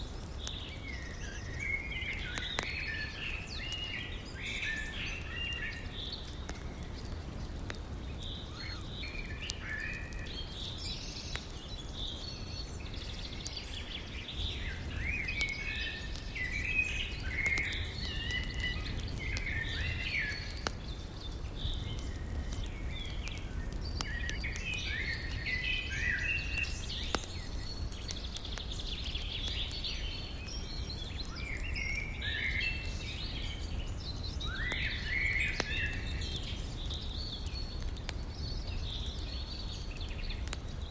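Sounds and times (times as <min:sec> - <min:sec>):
faint campfire crackles: 0:00.0 - 0:40.9
birds chirping and singing: 0:08.2 - 0:37.7.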